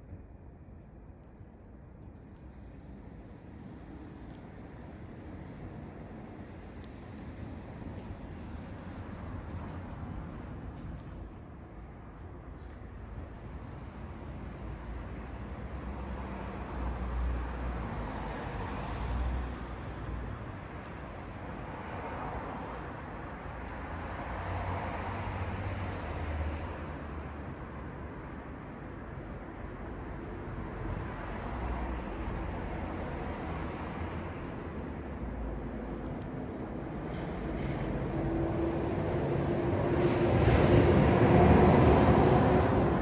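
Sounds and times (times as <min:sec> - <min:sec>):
road traffic passing: 0:15.2 - 0:43.0.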